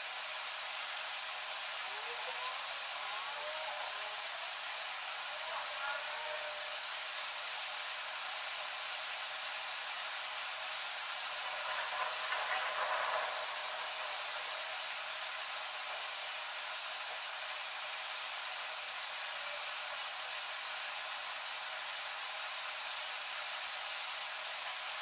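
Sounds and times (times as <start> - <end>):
spray paint can hissing: 7.8 - 25.0.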